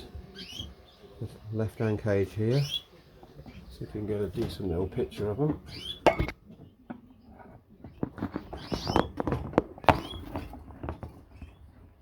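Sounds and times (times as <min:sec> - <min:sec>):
birds scrabbling in wire cage: 0:07.7 - 0:12.0.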